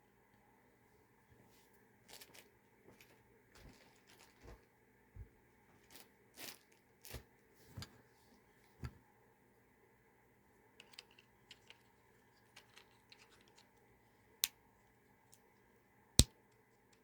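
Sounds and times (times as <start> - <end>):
small plastic parts clicking: 10.8 - 13.8.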